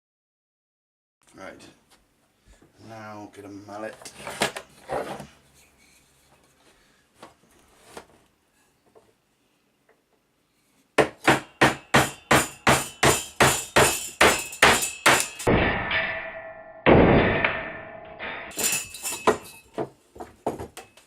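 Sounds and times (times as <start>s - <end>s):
mallet hammering: 11.0s - 18.6s
metallic ringing: 12.1s - 19.8s.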